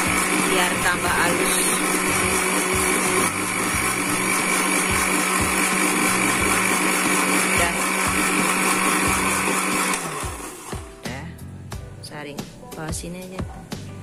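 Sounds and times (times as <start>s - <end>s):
electric blender running: 0.0s - 11.0s.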